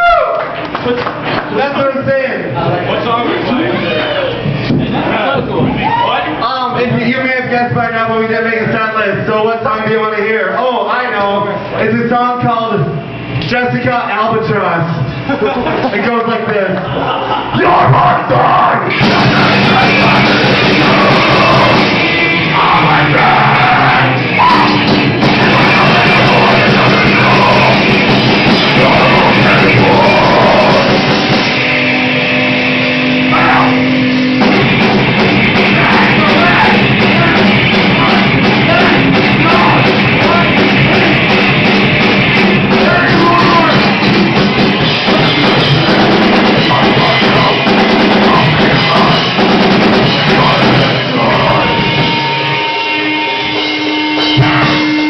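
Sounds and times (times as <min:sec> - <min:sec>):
live rock band: 0:17.6 - 0:55.0
drum kit: 0:17.7 - 0:55.0
person singing: 0:18.8 - 0:31.2, 0:35.6 - 0:41.3, 0:46.4 - 0:53.4.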